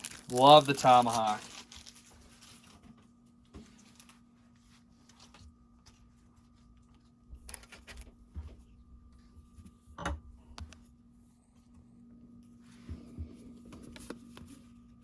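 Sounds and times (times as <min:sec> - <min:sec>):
handling cards and packaging: 0:00.0 - 0:08.8
faint steady hum: 0:00.0 - 0:15.0.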